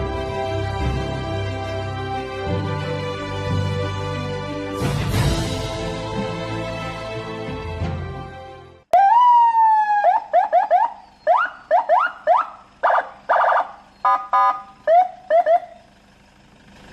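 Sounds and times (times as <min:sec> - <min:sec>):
background music: 0:00.0 - 0:08.9
electronic vehicle siren: 0:08.9 - 0:16.0.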